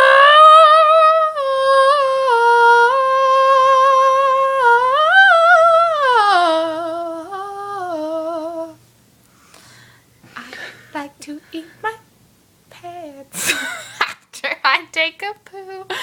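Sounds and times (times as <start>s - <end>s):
woman humming: 0.0s - 8.8s, 10.4s - 12.0s, 12.7s - 13.7s.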